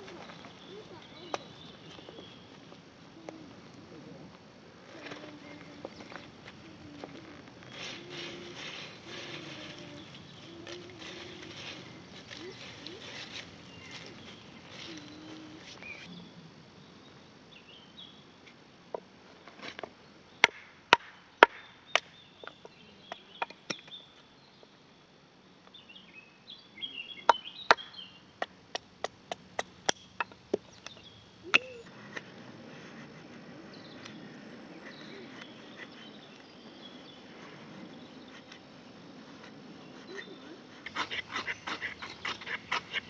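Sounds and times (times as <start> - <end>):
wood chopping strikes: 20.4 - 22.2.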